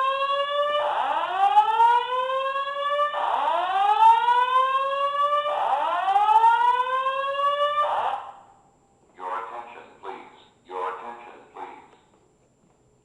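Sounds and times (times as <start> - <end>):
fire alarm whooping: 0.0 - 8.5.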